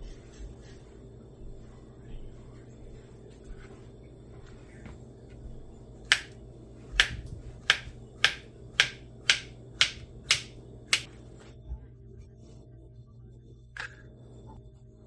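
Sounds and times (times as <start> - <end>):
sharp clicks: 6.1 - 6.3, 7.0 - 11.1.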